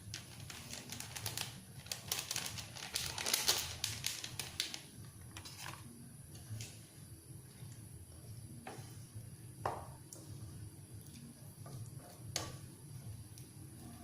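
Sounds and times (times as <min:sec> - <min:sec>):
spoon stirring and scraping pot: 0:08.2 - 0:14.0.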